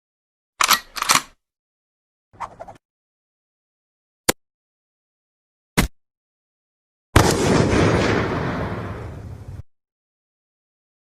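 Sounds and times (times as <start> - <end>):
loud rumbling explosion: 7.2 - 9.6.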